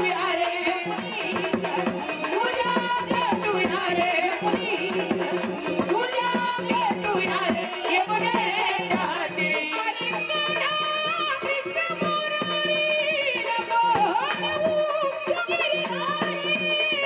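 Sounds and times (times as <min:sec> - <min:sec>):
person singing ornamented melody: 0:00.0 - 0:17.0.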